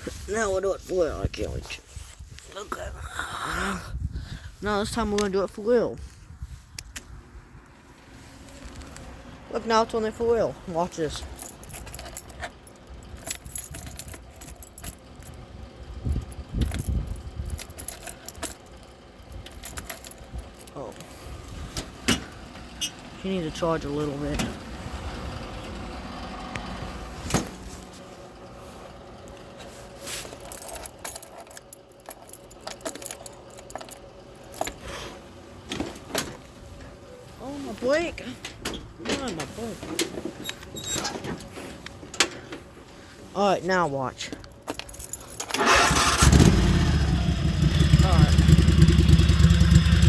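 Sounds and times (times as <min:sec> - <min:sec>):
metal clamps clicking and rattling: 0:11.2 - 0:20.8, 0:30.2 - 0:34.8, 0:44.4 - 0:46.4.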